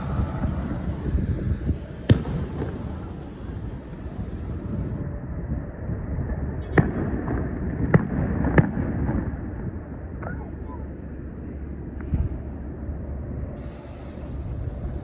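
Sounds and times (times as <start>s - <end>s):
train rumbling past: 0.0s - 7.9s, 12.4s - 15.0s.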